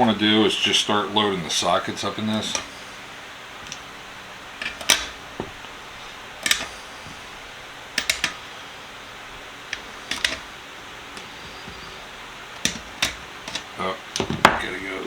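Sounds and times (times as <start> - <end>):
metal sockets clicking: 2.2 - 3.0, 3.6 - 8.7, 9.6 - 14.6.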